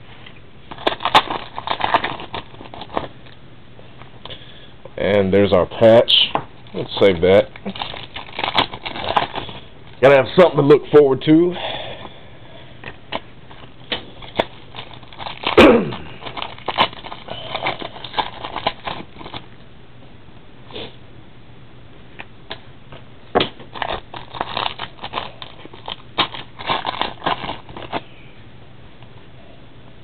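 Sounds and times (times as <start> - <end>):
cards shuffling: 0.7 - 3.1, 6.7 - 9.7, 12.9 - 19.5, 23.4 - 28.0
cards and packaging rustling: 0.7 - 3.2, 6.1 - 10.8, 12.8 - 19.5, 23.5 - 28.1.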